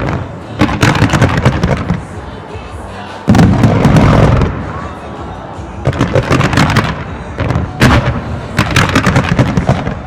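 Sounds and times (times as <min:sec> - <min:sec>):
fireworks reports and crackles: 0:00.0 - 0:10.0.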